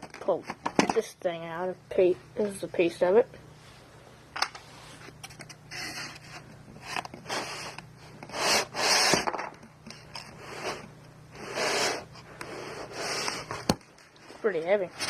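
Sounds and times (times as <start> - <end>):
cardboard box scraping and rustling: 5.7 - 7.8.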